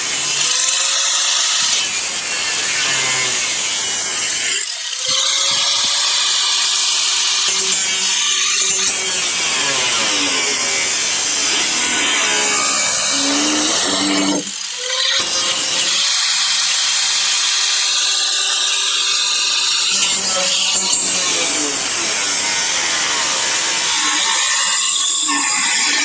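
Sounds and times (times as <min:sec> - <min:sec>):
electric grinder cutting sheet metal: 0:00.0 - 0:26.0.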